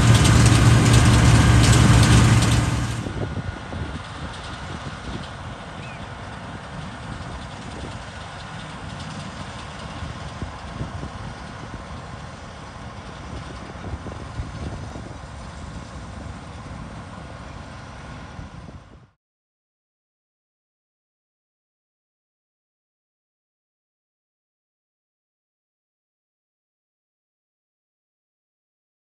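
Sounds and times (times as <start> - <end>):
combine harvester rumbling: 0.0 - 19.1
faint steady machine whine: 0.0 - 19.1.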